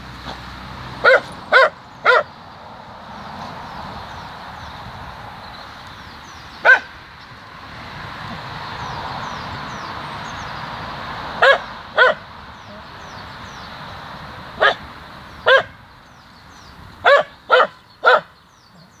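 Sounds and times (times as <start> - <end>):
dog barking: 1.0 - 2.3, 6.6 - 6.9, 11.4 - 12.2, 14.6 - 14.8, 15.4 - 15.8, 17.0 - 18.3.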